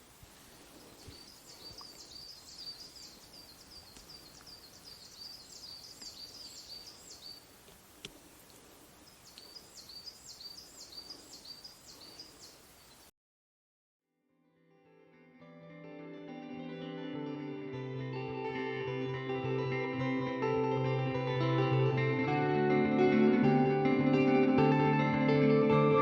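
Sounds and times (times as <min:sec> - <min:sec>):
faint outdoor background: 0:00.0 - 0:13.1
songbird singing: 0:00.0 - 0:13.1.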